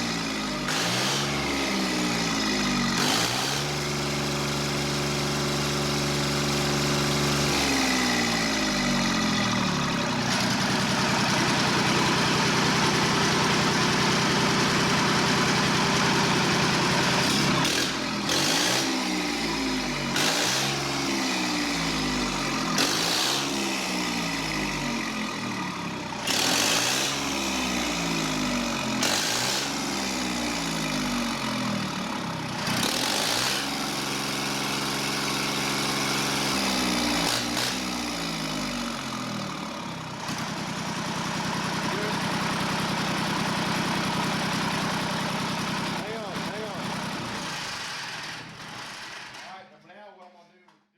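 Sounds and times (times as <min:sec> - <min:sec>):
diesel engine revving: 0:00.0 - 0:49.4.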